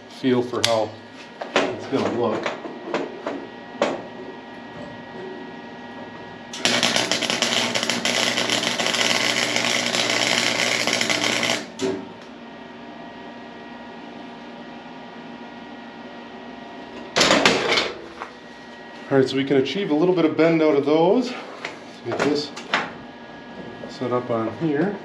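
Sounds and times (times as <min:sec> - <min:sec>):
steady hum: 0:00.0 - 0:25.0
welder arc crackling and buzzing: 0:06.5 - 0:12.4.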